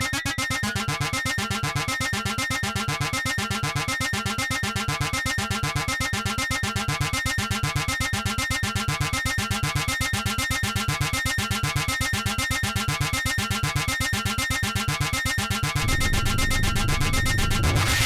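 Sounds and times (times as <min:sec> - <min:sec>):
electronic music pulsing: 0:15.8 - 0:18.0.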